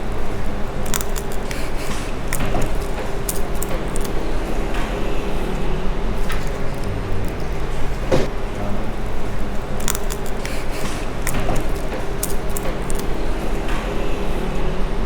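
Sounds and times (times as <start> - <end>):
steady low hum: 0.0 - 15.0
small tools clicking and scraping: 0.7 - 5.1, 9.7 - 13.9.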